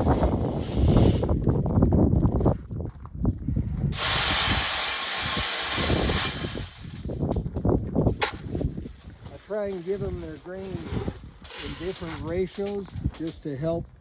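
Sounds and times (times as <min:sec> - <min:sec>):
grain pouring into trough: 0:04.0 - 0:07.4, 0:08.0 - 0:12.9.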